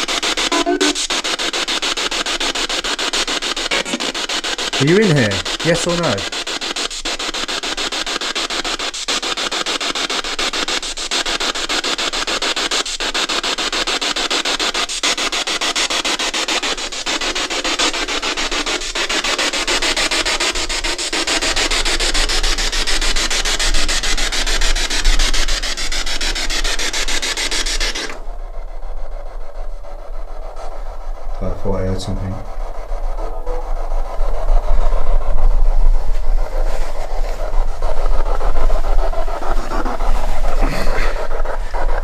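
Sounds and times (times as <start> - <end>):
radio static hiss: 0.0 - 1.4, 3.5 - 6.3.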